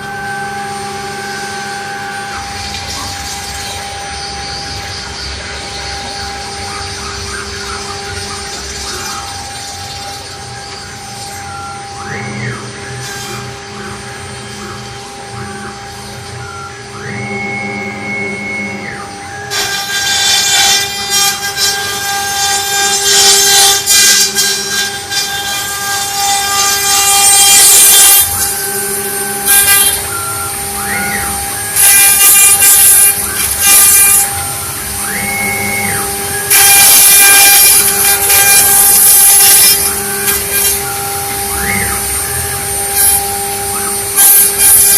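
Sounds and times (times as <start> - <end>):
motors ramping in pitch: 0.0 - 44.9
router spindle whine: 0.0 - 44.9
cutter rasping into wood: 19.4 - 34.4, 35.0 - 44.9.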